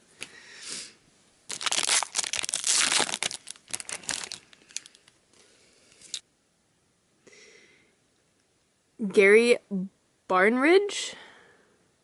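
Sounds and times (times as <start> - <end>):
foil wrapper tearing and crinkling: 1.5 - 5.2.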